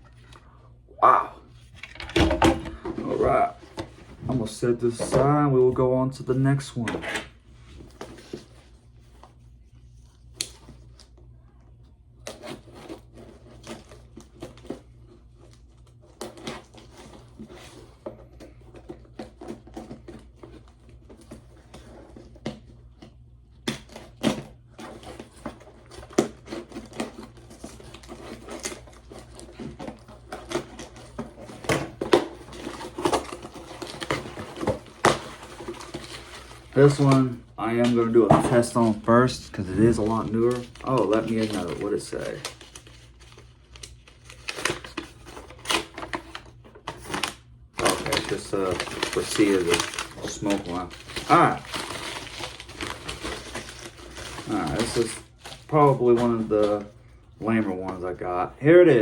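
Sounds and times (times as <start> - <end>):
packaging being opened by hand: 12.2 - 58.6.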